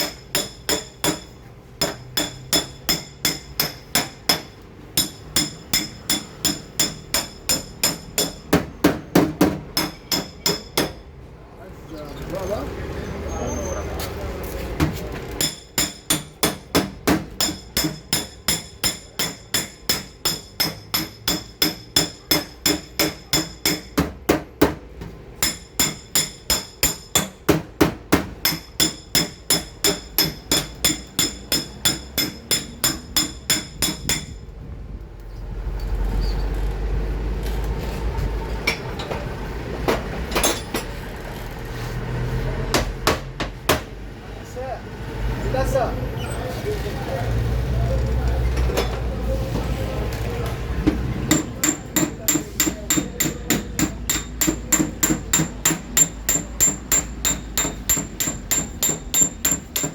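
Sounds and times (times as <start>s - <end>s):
hammer tapping on sheet metal: 0.0s - 11.1s, 14.8s - 34.4s, 42.7s - 43.9s, 50.8s - 59.9s.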